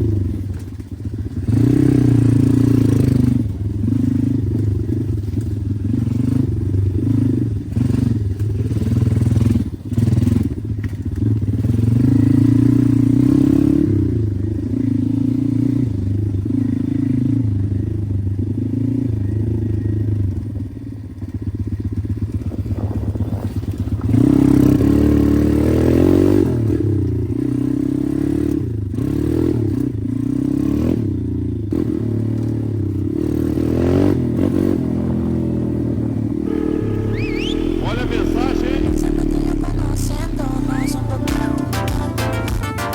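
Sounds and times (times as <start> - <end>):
pit bike engine revving: 31.8 - 41.7.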